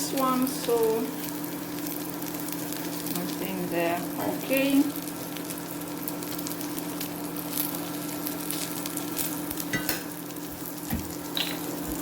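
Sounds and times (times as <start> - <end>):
oil crackling and popping: 0.0 - 12.0
pancakes sizzling in oil: 0.0 - 12.0.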